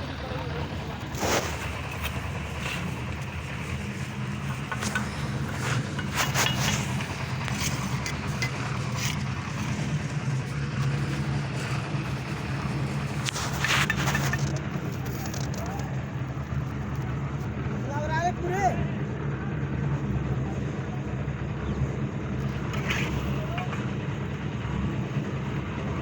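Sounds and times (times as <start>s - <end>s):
engine running: 0.0s - 26.0s
scrapes and knocks: 1.2s - 15.3s.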